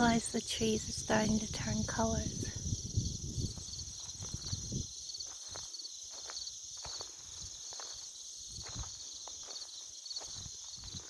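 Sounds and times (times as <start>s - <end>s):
crickets chirping: 0.0s - 11.0s
footsteps: 3.5s - 11.0s.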